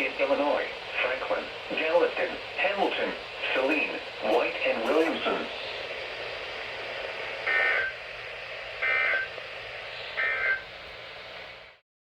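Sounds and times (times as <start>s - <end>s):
steady hiss: 0.0s - 11.8s
data tone bursts: 7.5s - 8.0s, 8.8s - 9.3s, 10.2s - 10.7s.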